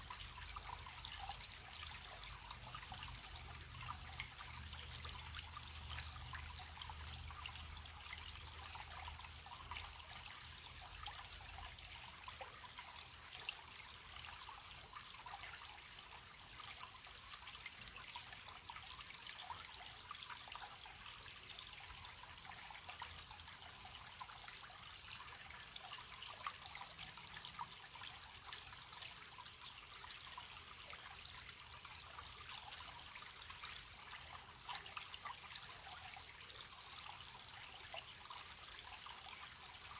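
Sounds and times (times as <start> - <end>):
crickets chirping: 0.0 - 39.9
stream babbling: 0.0 - 39.9.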